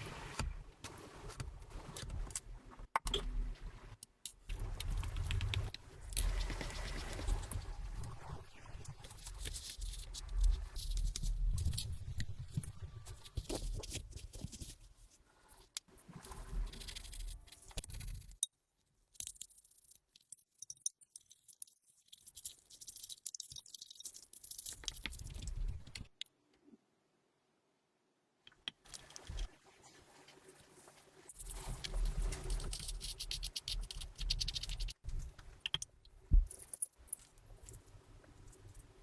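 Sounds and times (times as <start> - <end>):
tools clicking and scraping watch parts: 19.1 - 26.1, 31.3 - 39.0.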